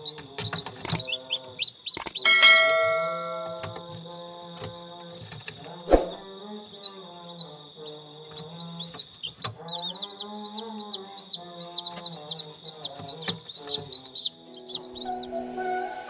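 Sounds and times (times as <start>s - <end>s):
chicks peeping: 0.0s - 2.2s, 6.4s - 16.0s
background music with held notes: 12.9s - 16.0s.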